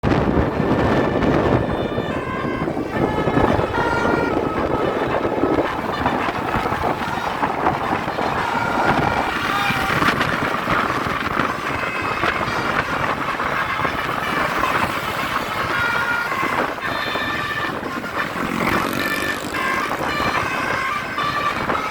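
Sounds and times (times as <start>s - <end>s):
road and engine noise: 0.0s - 21.9s
multi-tone musical air horn: 0.2s - 21.9s.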